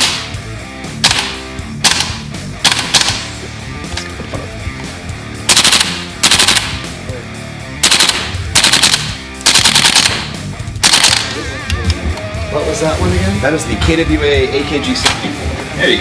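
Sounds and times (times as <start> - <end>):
airsoft rifle automatic fire: 0.0 - 0.3, 1.0 - 3.3, 5.5 - 6.9, 7.8 - 11.4.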